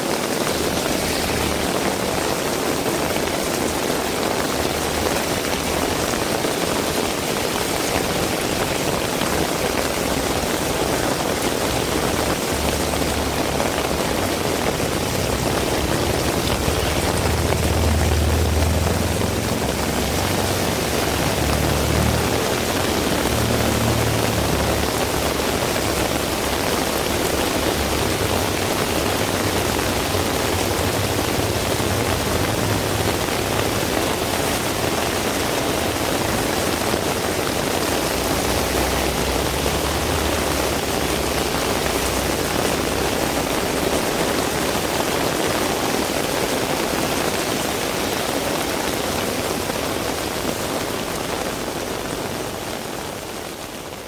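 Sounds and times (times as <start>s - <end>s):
heavy rain hissing: 0.0s - 54.0s
low rumble: 12.2s - 34.9s.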